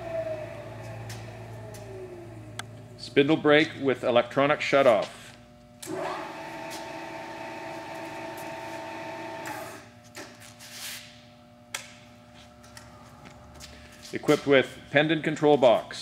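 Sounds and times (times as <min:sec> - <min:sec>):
milling machine motor whine: 0:00.0 - 0:03.3, 0:05.8 - 0:09.8.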